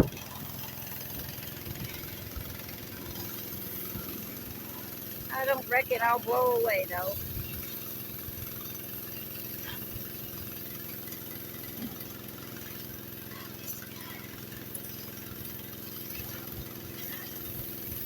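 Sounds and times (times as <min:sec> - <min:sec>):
pressure washer engine running: 0:00.0 - 0:18.0
water jet hissing: 0:00.0 - 0:18.0
wind rumbling on microphone: 0:07.1 - 0:07.7.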